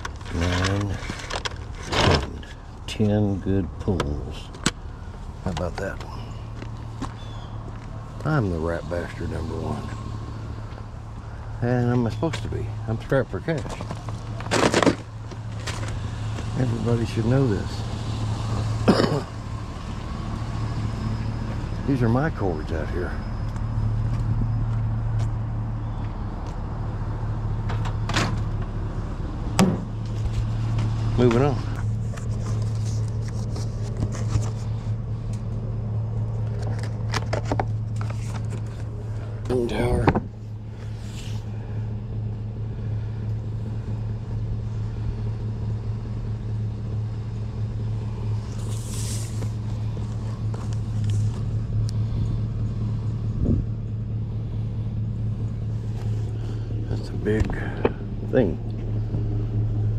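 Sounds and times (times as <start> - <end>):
vehicle engine humming: 0.0 - 59.9
short thump: 29.6 - 30.9.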